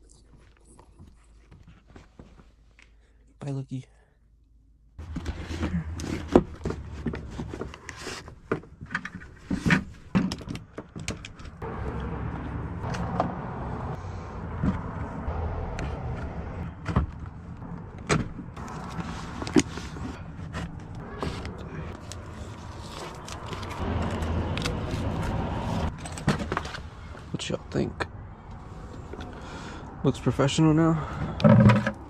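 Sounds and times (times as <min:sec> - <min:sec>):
hard objects clunking and rattling: 0:05.0 - 0:11.6, 0:25.9 - 0:27.0, 0:31.2 - 0:32.0
steady low rumble: 0:11.6 - 0:30.4.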